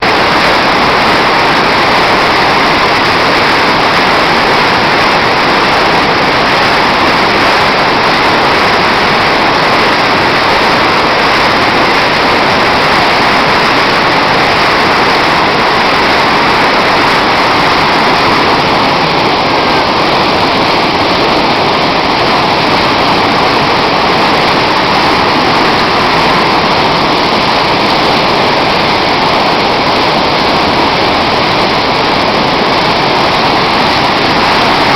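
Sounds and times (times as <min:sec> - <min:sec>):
heavy rain pouring: 0:00.0 - 0:34.9.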